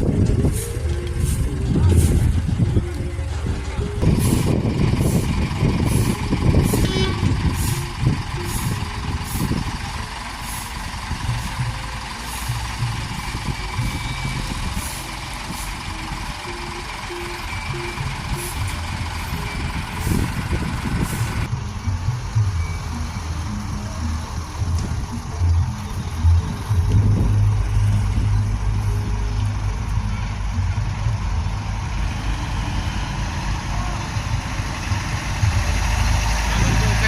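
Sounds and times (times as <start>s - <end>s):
heavy diesel engine rumbling: 0.0s - 37.0s
high-pitched warning beeps: 13.3s - 21.5s.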